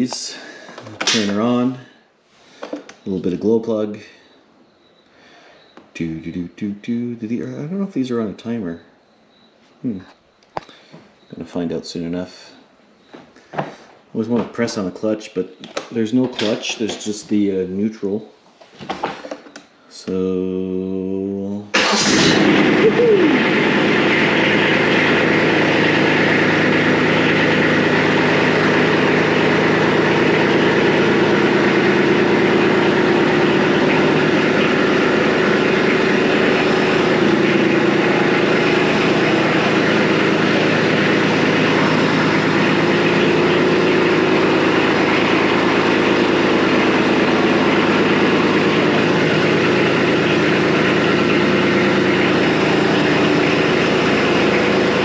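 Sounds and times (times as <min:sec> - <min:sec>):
diesel tractor engine running: 0:21.7 - 0:55.0.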